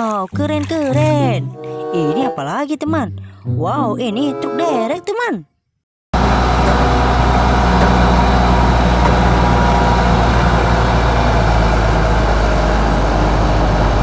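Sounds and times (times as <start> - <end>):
truck engine idling: 6.2 - 14.0.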